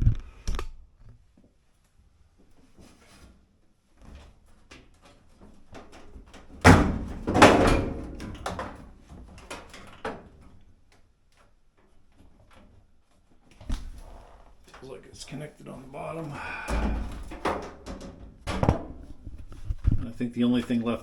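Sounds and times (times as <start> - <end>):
clunks and rattles: 5.4 - 10.6, 16.3 - 20.1
sheet metal clanging knocks: 6.6 - 8.9, 16.5 - 19.2.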